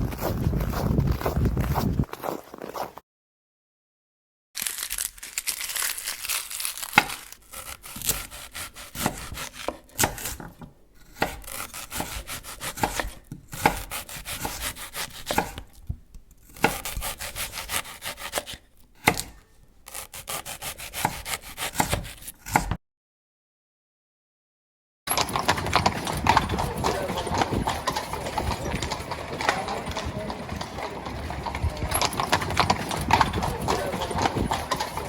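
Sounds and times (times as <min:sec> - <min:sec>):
rough scraping and rubbing: 0:00.0 - 0:03.0, 0:06.2 - 0:15.7.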